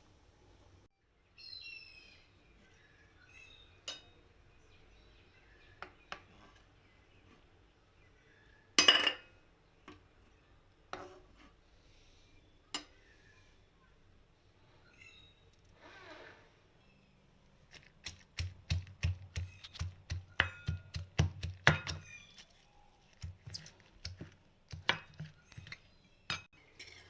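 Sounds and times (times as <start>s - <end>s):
bird chirping: 1.2s - 8.8s, 14.6s - 15.7s, 16.7s - 27.0s
dishes and utensils clinking: 24.9s - 27.0s.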